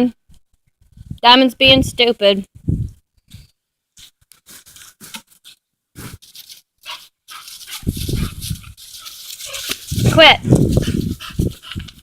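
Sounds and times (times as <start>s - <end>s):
dogs play-wrestling noises: 6.9s - 9.8s.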